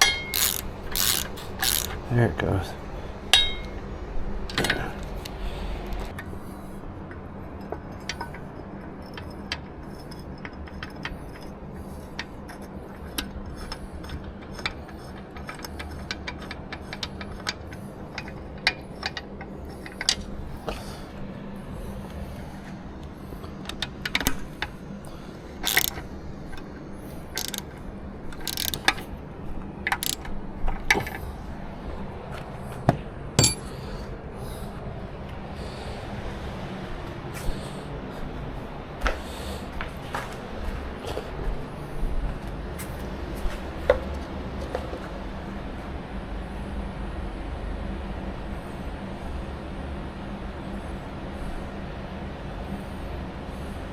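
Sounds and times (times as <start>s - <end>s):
tools clinking on metal: 0.0s - 2.0s, 3.3s - 3.8s, 27.4s - 27.6s, 33.4s - 33.7s
steady low hum: 0.0s - 53.9s.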